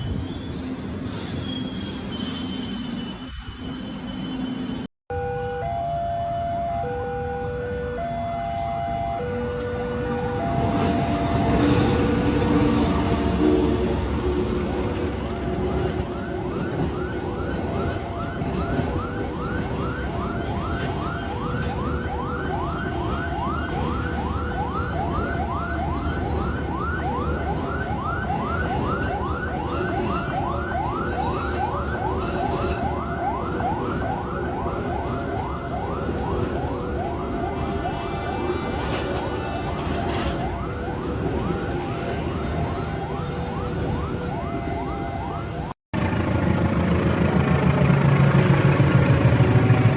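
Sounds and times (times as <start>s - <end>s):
electronic yelp siren: 5.1s - 13.5s, 15.4s - 45.8s.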